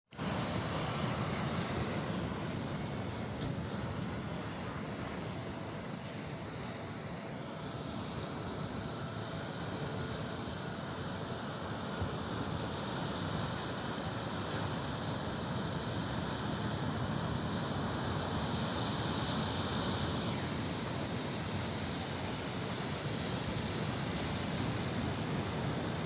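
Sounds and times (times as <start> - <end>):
high hiss: 0.1 - 4.4, 17.8 - 24.8
steady rushing noise: 0.1 - 5.6.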